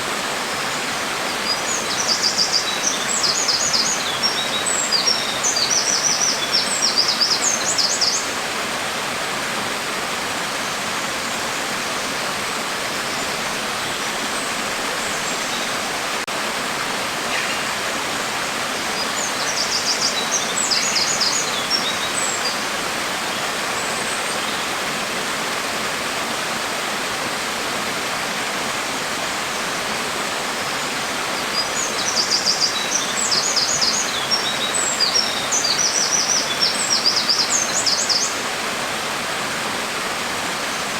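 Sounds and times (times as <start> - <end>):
songbird chirping: 17.3 - 17.8.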